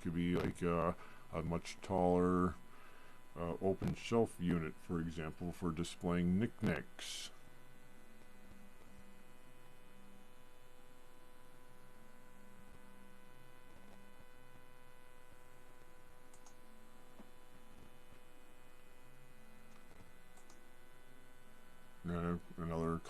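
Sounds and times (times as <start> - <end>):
electrical hum: 0.0 - 23.0
faint clicks: 19.7 - 20.6.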